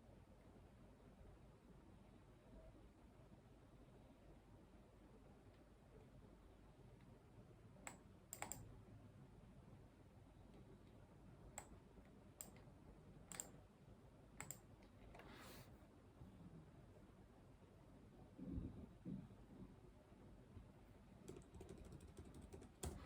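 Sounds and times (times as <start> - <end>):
computer mouse and keyboard clicks: 7.9 - 8.7, 13.3 - 13.6, 14.4 - 15.3, 21.2 - 23.0.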